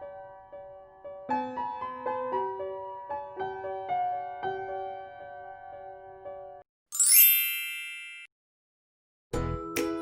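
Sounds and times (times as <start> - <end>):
gentle piano melody: 0.0 - 6.6.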